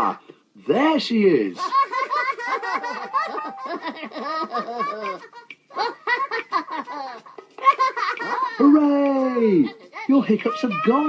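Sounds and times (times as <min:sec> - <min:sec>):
cartoon characters laughing: 0:01.6 - 0:08.7.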